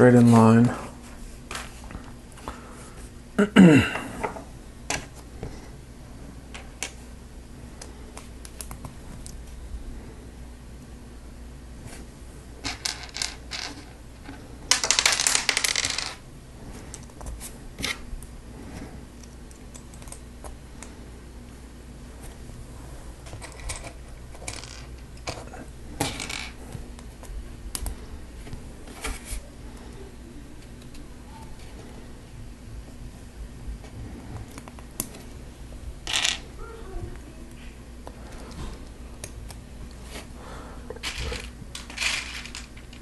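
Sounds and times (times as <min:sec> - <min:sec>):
plastic pieces clicking and clattering: 0:14.7 - 0:16.2, 0:23.3 - 0:26.6, 0:41.0 - 0:43.0.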